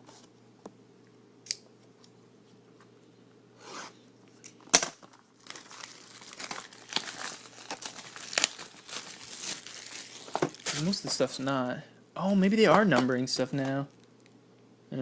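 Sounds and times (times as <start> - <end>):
wrappers crinkling: 5.0 - 11.4.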